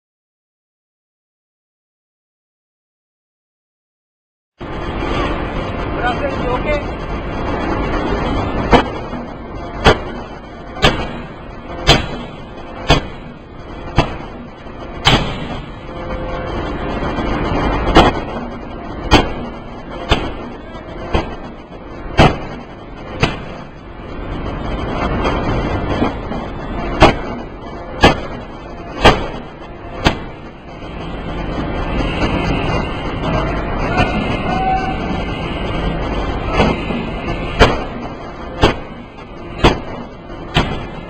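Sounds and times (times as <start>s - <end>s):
forging machinery running: 4.6s - 41.0s
forging hammer blows: 7.4s - 41.0s.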